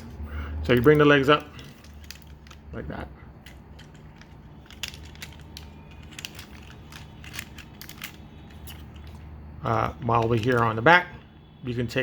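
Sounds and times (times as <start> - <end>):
plastic toy parts clicking: 0.7 - 2.8, 3.4 - 10.9.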